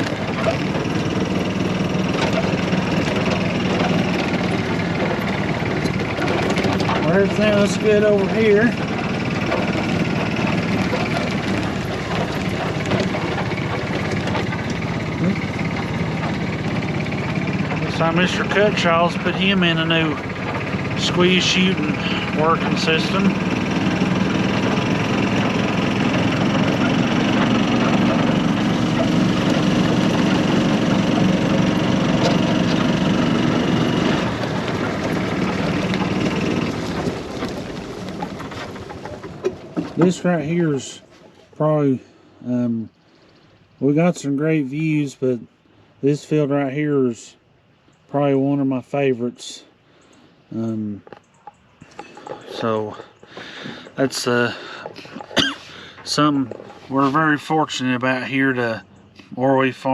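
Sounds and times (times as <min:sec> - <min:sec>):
light rattles: 0:00.0 - 0:45.2
golf cart engine running: 0:00.0 - 0:59.9.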